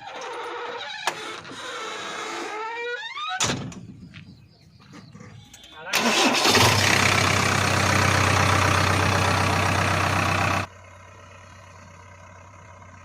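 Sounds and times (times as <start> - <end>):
diesel engine running: 5.3 - 13.0.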